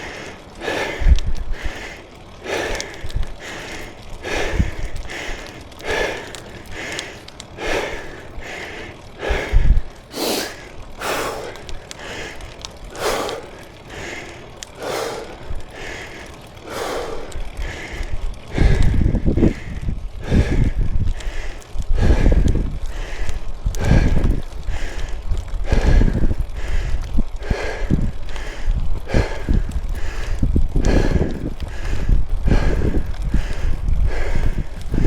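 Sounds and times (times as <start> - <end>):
person breathing hard: 0.0 - 35.0
low rumble: 9.0 - 35.0.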